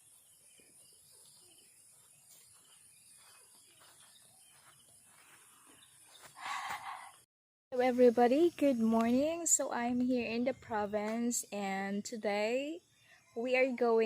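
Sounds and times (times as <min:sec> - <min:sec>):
insects droning: 0:07.8 - 0:11.4.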